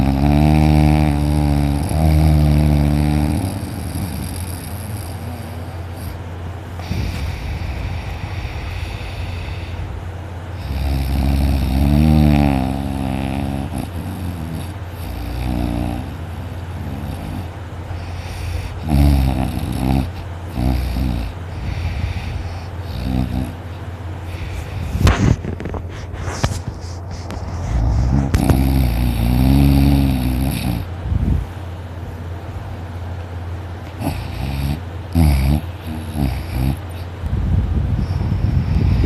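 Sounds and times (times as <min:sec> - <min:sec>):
loud snoring: 0:00.0 - 0:06.2, 0:06.8 - 0:09.8, 0:10.5 - 0:25.4, 0:27.6 - 0:30.9, 0:33.8 - 0:37.1, 0:37.9 - 0:39.0
steady low hum: 0:00.0 - 0:39.0.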